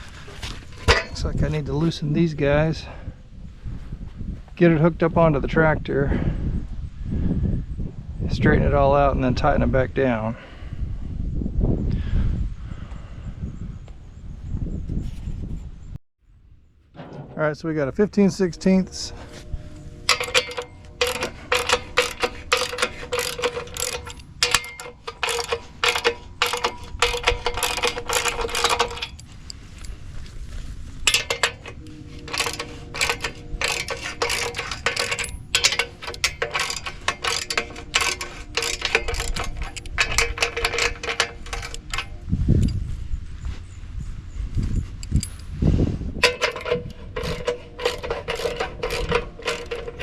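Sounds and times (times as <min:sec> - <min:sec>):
ratchet wrench clicking: 0:20.1 - 0:29.3, 0:31.1 - 0:42.2, 0:46.2 - 0:50.0.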